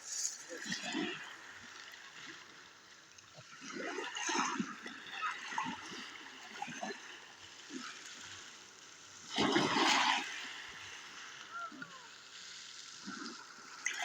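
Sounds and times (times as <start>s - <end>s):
sea water splashing: 9.2s - 12.2s.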